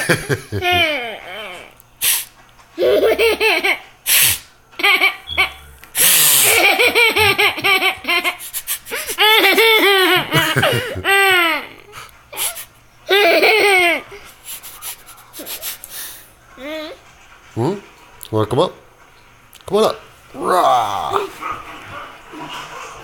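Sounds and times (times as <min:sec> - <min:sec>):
baby giggling: 0:00.0 - 0:01.7, 0:02.8 - 0:03.9, 0:04.8 - 0:14.1
baby sniffing: 0:02.0 - 0:02.3, 0:04.1 - 0:04.5, 0:05.4 - 0:06.6, 0:08.4 - 0:09.2, 0:12.4 - 0:12.7, 0:14.2 - 0:16.2.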